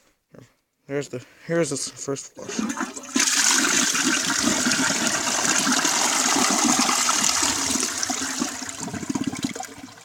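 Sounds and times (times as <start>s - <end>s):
toilet flushing: 2.4s - 10.0s.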